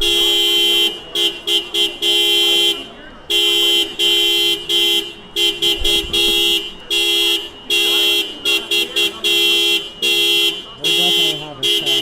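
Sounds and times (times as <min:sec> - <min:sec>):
car horn honking: 0:00.0 - 0:12.0.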